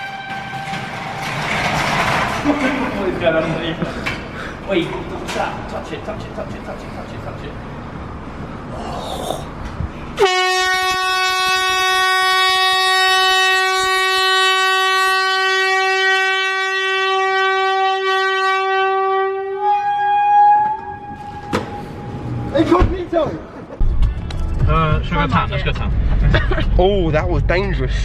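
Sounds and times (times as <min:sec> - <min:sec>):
air horn blasting: 0:00.0 - 0:01.2, 0:10.2 - 0:22.5.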